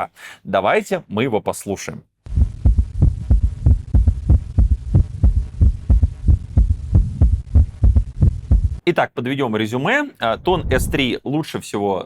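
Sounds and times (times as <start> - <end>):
heartbeat gallop thuds: 2.3 - 8.8.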